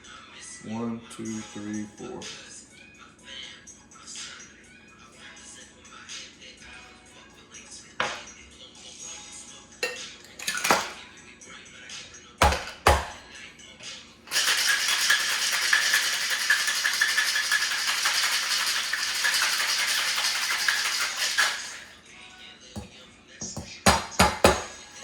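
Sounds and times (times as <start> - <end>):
ice rattling in cocktail shaker: 9.8 - 11.0, 14.3 - 22.0
knocks and clinks: 9.8 - 11.0.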